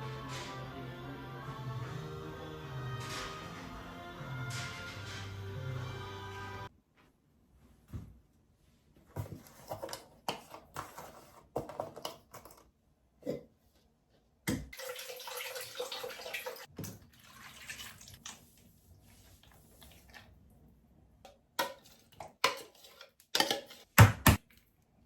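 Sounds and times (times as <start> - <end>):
tap water running into sink: 14.7 - 18.5.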